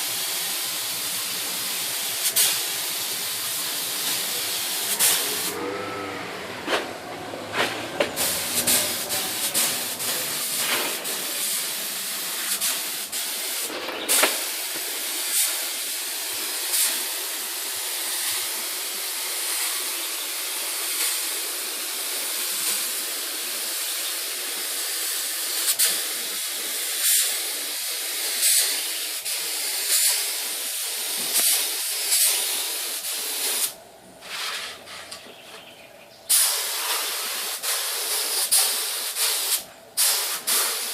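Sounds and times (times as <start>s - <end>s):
spray gun hissing: 0.0s - 34.8s, 36.3s - 40.9s.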